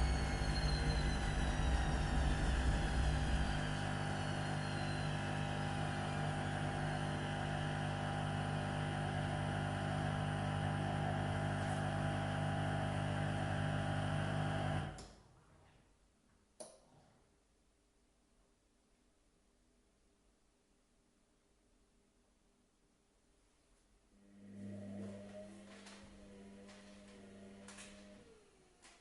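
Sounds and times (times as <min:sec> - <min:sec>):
washing machine hum: 0:00.0 - 0:15.0, 0:24.2 - 0:29.0
washing machine low rumble: 0:00.0 - 0:15.0
washing machine motor whine: 0:00.0 - 0:15.0, 0:24.2 - 0:29.0.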